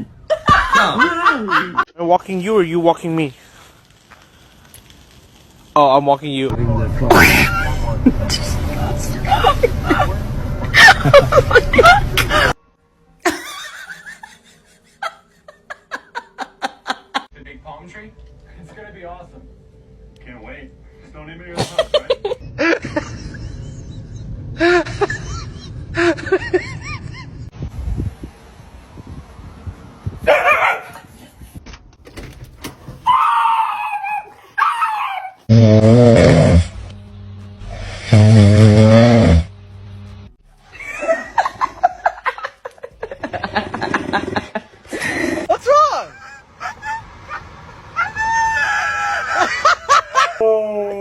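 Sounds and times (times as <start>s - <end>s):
person laughing in quick bursts: 21.6s - 23.2s, 40.7s - 47.4s
dog crying out: 33.0s - 35.5s, 46.1s - 49.5s.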